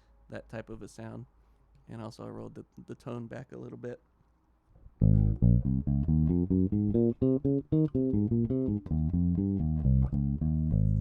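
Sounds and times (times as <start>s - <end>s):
electric bass plucked notes: 5.0s - 11.0s.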